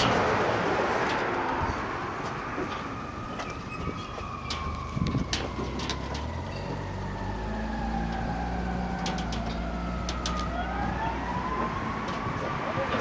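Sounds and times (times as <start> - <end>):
idling engine hum: 0.2 - 13.0
siren wailing: 2.6 - 13.0.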